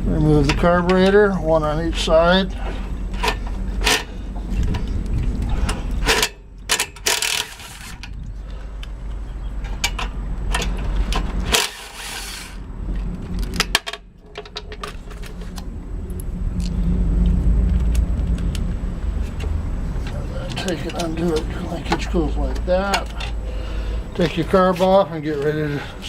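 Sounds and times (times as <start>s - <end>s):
steady low hum: 0.0s - 26.0s
hand tools clicking on metal: 19.4s - 23.4s.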